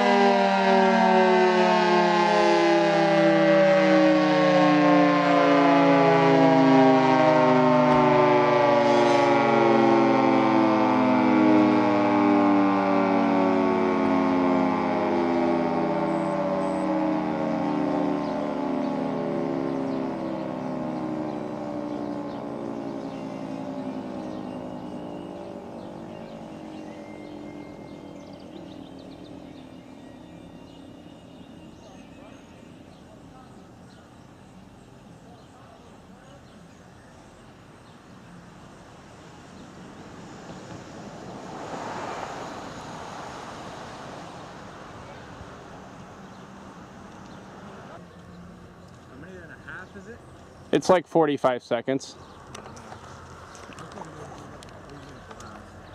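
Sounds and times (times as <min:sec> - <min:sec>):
three-tone warning siren: 0:00.0 - 0:48.8
small birds chirping: 0:18.1 - 0:41.2, 0:42.4 - 0:51.0, 0:51.6 - 0:55.9.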